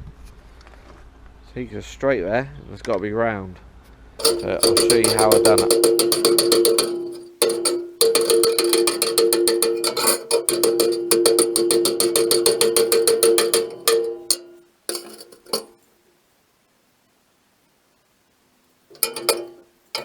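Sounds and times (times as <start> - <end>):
hammer blows ringing on steel plate: 4.2 - 15.7, 18.9 - 20.0.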